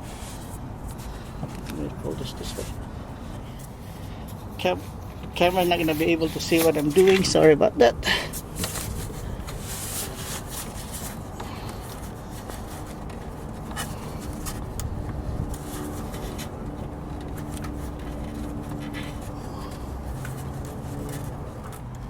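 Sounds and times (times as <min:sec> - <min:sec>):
hands scraping plastic liner: 0:04.5 - 0:07.5, 0:08.3 - 0:21.8
small clicks and rustles: 0:08.4 - 0:22.0.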